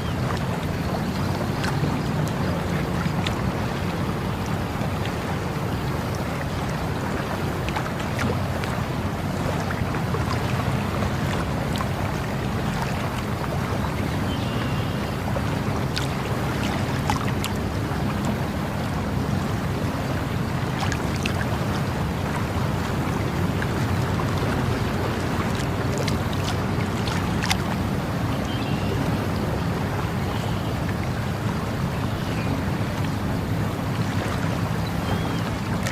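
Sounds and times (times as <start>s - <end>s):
water rushing: 0.0s - 35.9s
small sharp splashes: 15.9s - 17.6s, 20.6s - 27.8s.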